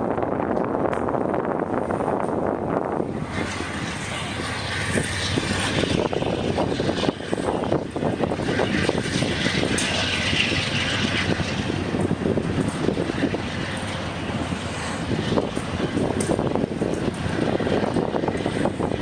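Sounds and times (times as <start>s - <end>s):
diesel locomotive rumble: 0.0s - 19.0s
train noise: 0.0s - 19.0s.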